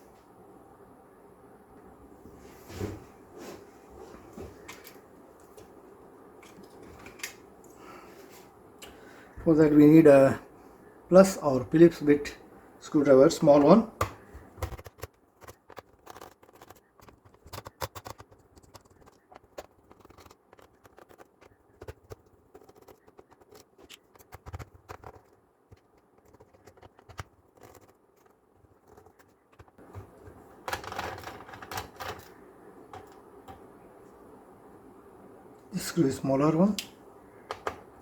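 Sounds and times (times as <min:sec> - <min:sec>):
screwdriver clicking and scraping screws: 0:14.6 - 0:32.3.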